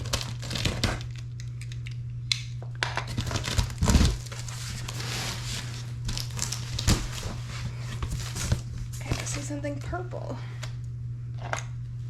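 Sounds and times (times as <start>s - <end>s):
packaging crinkling: 0.0s - 1.8s, 3.0s - 9.4s
steady low hum: 0.0s - 12.0s.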